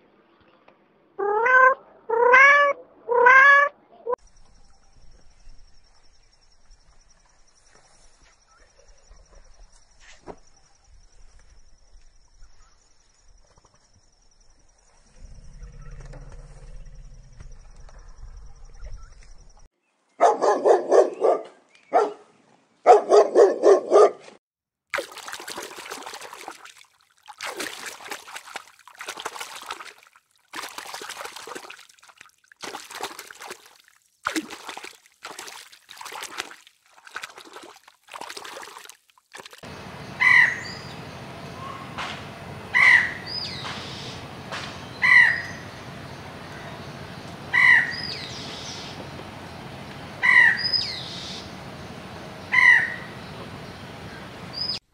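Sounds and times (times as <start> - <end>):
dog barking: 20.2 - 24.4.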